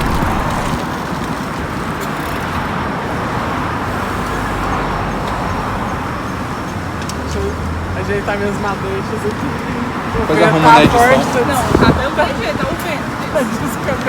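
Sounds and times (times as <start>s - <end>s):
strong wind on microphone: 0.0s - 1.2s, 10.8s - 12.8s
cars passing on a street: 0.0s - 14.0s.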